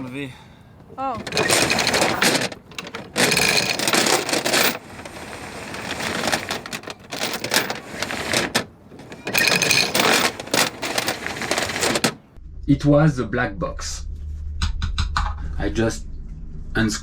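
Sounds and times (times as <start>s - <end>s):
tools clattering and rattling: 0.8s - 12.4s.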